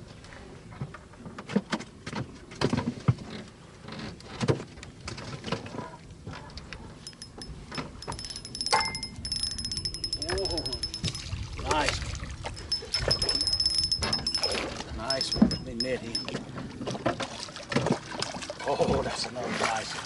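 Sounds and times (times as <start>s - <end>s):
fishing gear clattering: 7.0s - 11.8s, 12.5s - 16.4s
rapid even ticking: 7.1s - 11.3s, 12.6s - 16.3s.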